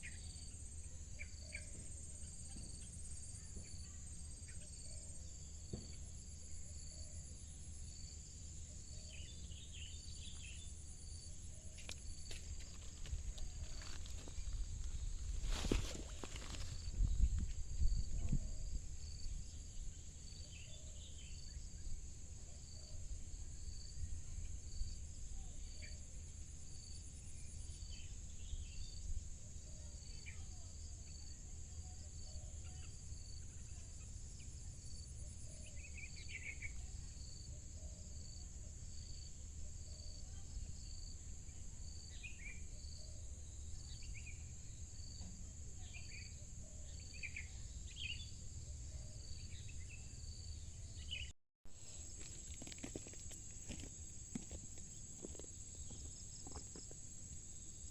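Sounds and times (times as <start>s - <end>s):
insects buzzing: 0.0s - 57.9s
low rumble of wind: 11.0s - 25.6s.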